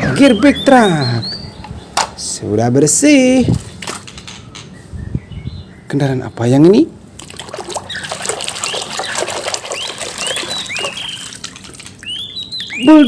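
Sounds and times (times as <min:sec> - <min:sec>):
water splashing and trickling: 0:07.1 - 0:13.0.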